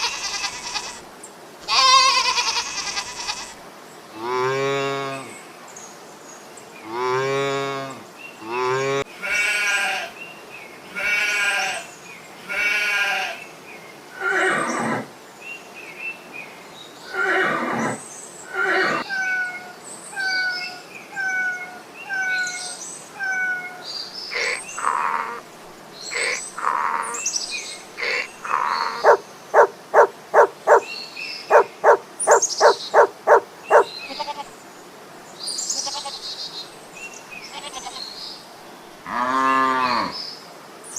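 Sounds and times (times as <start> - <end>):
goats bleating: 1.7 - 3.6, 9.2 - 10.1, 11.0 - 11.8, 12.5 - 13.4, 33.3 - 34.5.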